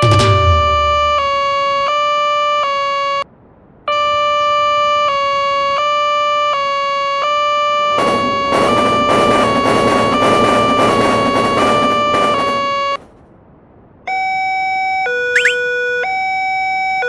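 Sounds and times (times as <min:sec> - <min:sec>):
buzzy two-pitch warning tone: 0:00.0 - 0:01.6.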